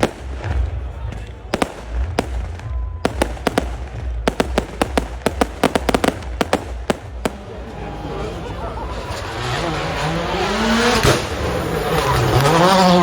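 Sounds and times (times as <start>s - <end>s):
firecrackers cracking: 0.0s - 9.6s.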